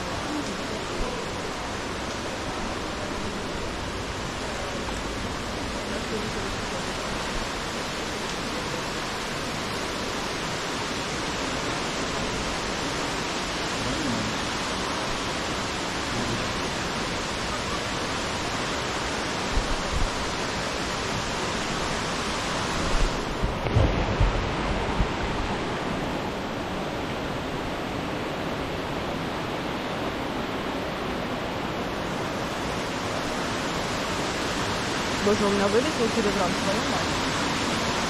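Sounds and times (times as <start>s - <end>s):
waterfall rushing: 0.0s - 38.0s
wind buffeting microphone: 21.0s - 26.6s.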